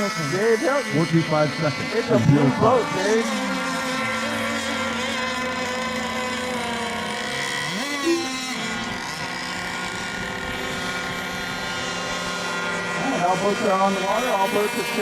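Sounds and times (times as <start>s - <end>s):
boat motor revving: 0.0s - 15.0s
rc boat motors whining: 0.0s - 15.0s.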